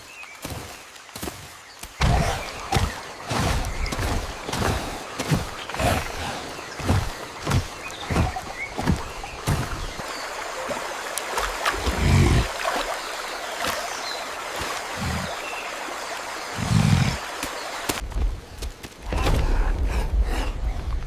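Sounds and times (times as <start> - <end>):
running water: 0.0 - 19.1
heavy rain hissing: 14.7 - 18.0.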